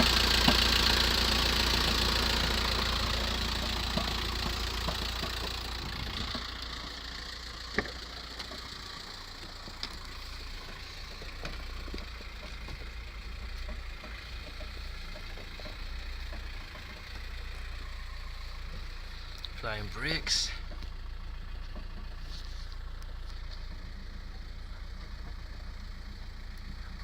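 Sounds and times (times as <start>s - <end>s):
diesel engine idling: 0.0s - 27.0s
knocking rattle: 10.4s - 18.9s.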